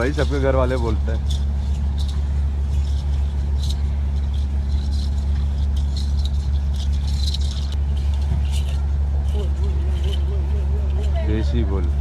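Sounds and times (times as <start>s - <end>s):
low engine-like hum: 0.0s - 12.0s.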